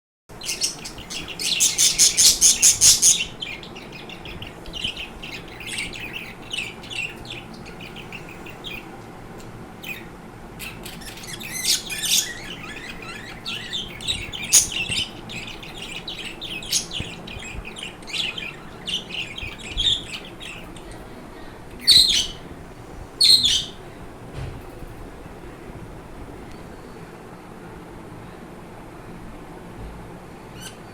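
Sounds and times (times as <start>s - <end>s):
budgerigars chattering and warbling: 0.4s - 8.9s, 9.8s - 21.0s, 21.8s - 22.5s, 23.2s - 23.8s
loud sharp bird calls: 0.4s - 8.9s, 9.8s - 20.7s, 21.9s - 22.4s, 23.2s - 23.8s.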